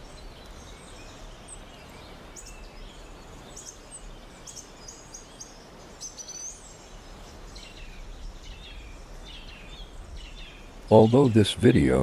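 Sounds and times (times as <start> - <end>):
small birds chirping: 0.0 - 12.0
steady background hiss: 0.0 - 12.0.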